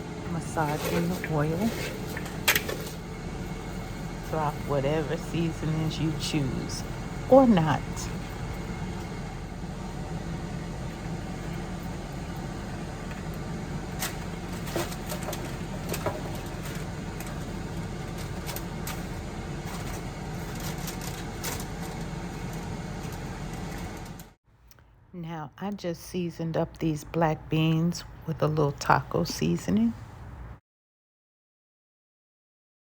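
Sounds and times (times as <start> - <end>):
air fryer fan humming: 0.0 - 24.4.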